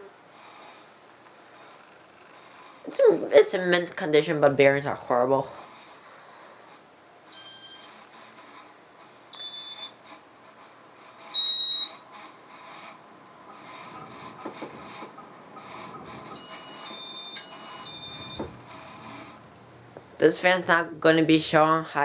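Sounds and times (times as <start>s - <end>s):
fan running on worn bearings: 10.0s - 22.0s
short electronic beeps: 16.4s - 18.5s.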